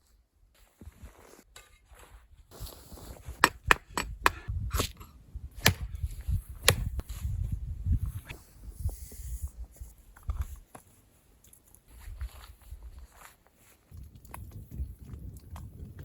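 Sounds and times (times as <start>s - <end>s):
sharp knocks: 5.6s - 5.9s.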